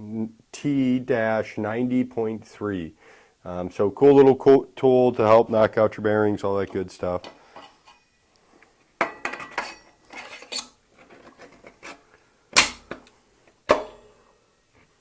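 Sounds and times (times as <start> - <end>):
sharp metal-on-metal knocks: 12.6 - 13.0, 13.7 - 14.1.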